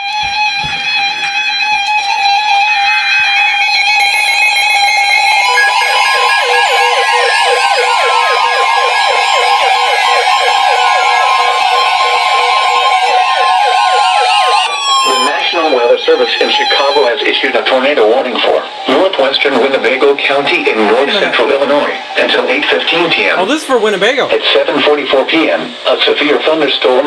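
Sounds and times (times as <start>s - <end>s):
warbling siren-style alarms: 0.0s - 24.7s
pulsing electronic beeps: 3.9s - 15.3s
steady radio alert tone: 4.2s - 25.8s.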